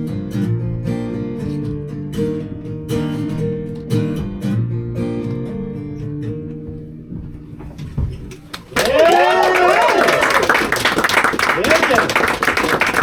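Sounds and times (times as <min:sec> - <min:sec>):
acoustic guitar strumming chords: 0:00.0 - 0:08.5.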